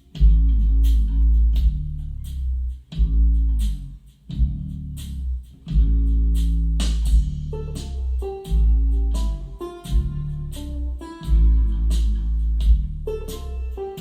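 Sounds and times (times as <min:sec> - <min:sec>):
deep bass notes: 0:00.0 - 0:14.0
sharp drum hits: 0:06.8 - 0:10.3, 0:11.2 - 0:14.0
plucked guitar notes: 0:07.1 - 0:14.0.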